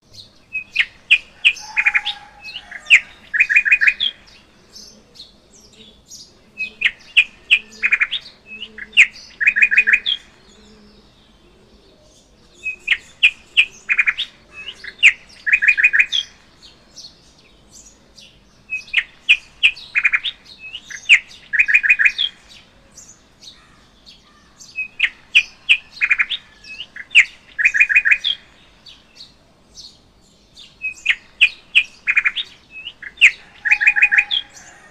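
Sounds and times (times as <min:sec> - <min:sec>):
bird chirping and trilling: 0:00.1 - 0:16.5, 0:23.5 - 0:29.4, 0:30.6 - 0:34.9.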